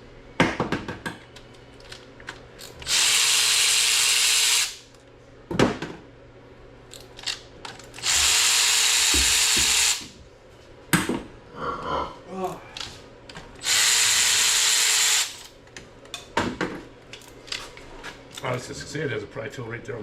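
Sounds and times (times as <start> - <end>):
power tool running: 2.8 - 4.8, 8.0 - 10.2, 13.6 - 15.5.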